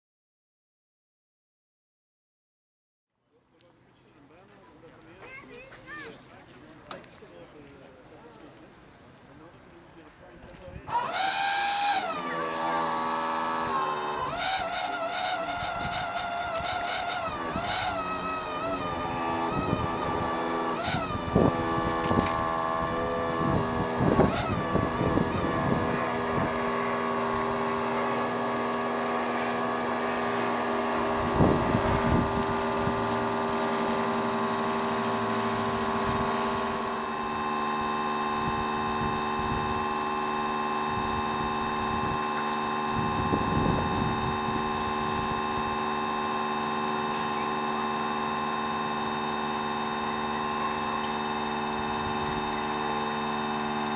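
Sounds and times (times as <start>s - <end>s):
aircraft engine running: 10.3s - 53.9s
wind gusts on microphone: 31.2s - 33.0s, 43.0s - 44.6s.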